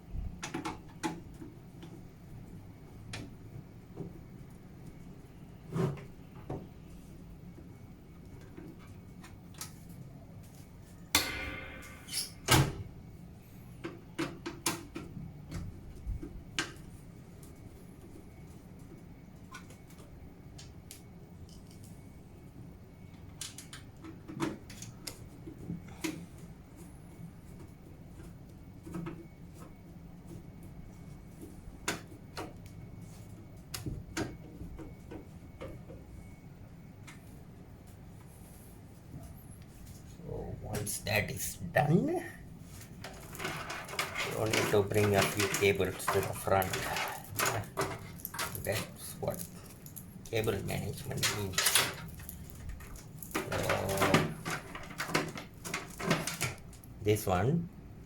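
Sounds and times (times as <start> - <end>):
low steady hum: 1.1 - 14.3, 14.9 - 58.0
computer parts clicking and knocking: 11.1 - 12.9, 43.1 - 56.6
knocks on metal computer case: 11.2 - 12.9.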